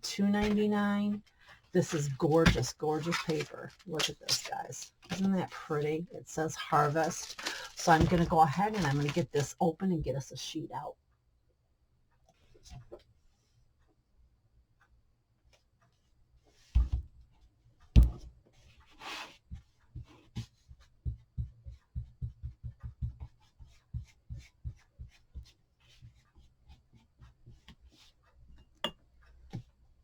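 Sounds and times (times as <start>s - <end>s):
papery rustle: 1.8s - 5.9s, 6.5s - 9.6s.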